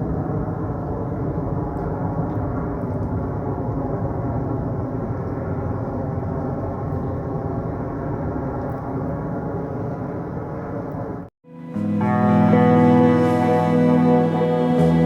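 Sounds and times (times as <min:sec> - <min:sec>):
ambient gong-like drone music: 0:11.5 - 0:15.0.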